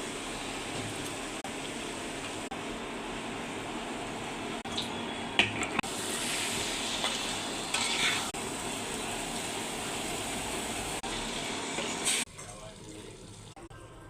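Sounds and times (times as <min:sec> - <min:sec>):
food sizzling in a pan: 0:05.8 - 0:13.6.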